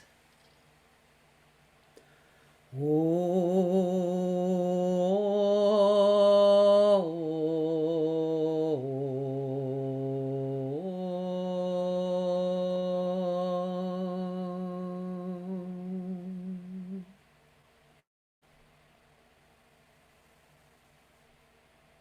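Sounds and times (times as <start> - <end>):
woman singing sustained tones: 2.7 - 17.2.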